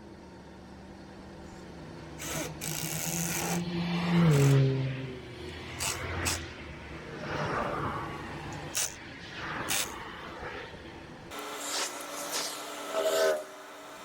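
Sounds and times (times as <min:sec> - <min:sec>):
motor humming: 0:02.0 - 0:04.6, 0:11.3 - 0:14.0.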